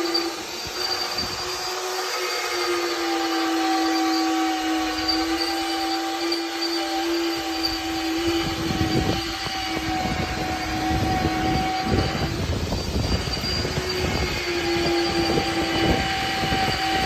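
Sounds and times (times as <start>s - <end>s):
motor whine: 0.0s - 17.0s
rough rumbling and scraping: 3.6s - 17.0s.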